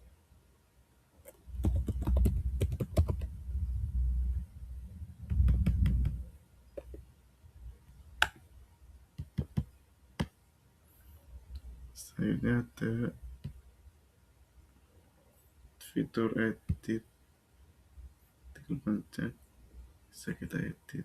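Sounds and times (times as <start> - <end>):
typing on computer keyboard: 1.3 - 3.4.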